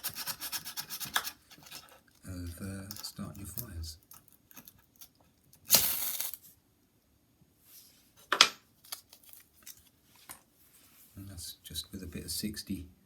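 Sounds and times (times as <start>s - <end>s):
sandpaper rasping on rod: 0.0s - 1.8s.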